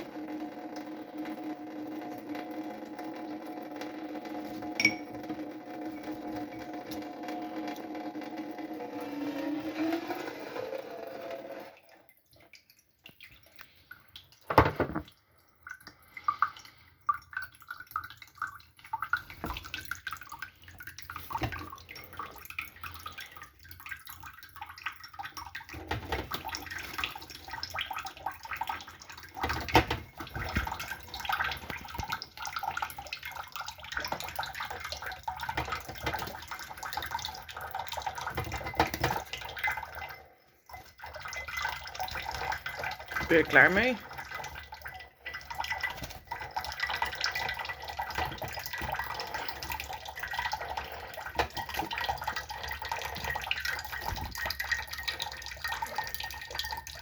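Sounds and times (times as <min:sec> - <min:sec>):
tap water splashing: 0:12.4 - 0:15.2, 0:17.7 - 0:40.0, 0:40.8 - 0:57.0.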